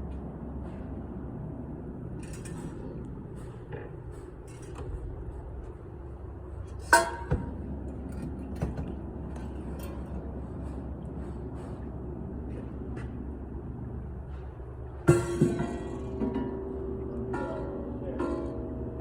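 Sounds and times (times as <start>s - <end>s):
workshop machinery rumble: 0.0s - 19.0s
faint knocks and clanks: 2.2s - 13.4s.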